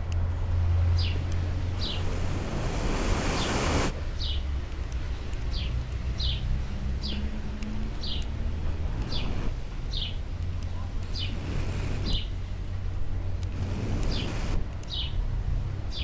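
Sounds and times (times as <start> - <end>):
small bird chirping: 0.9 - 2.2, 5.1 - 7.3, 8.0 - 8.4, 9.0 - 11.4, 12.0 - 12.4, 14.0 - 15.2
loud rushing noise: 1.5 - 4.0, 8.4 - 9.7, 13.5 - 14.7.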